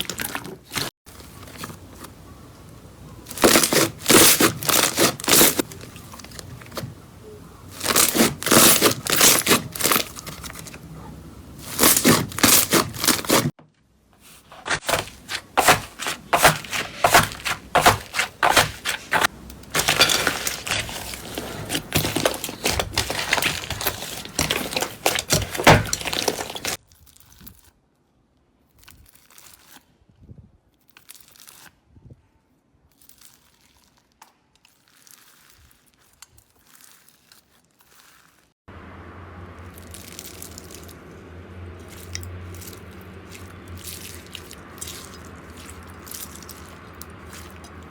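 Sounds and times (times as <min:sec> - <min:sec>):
slime crackling and popping: 0:32.9 - 0:38.5, 0:39.7 - 0:41.0, 0:41.9 - 0:47.9.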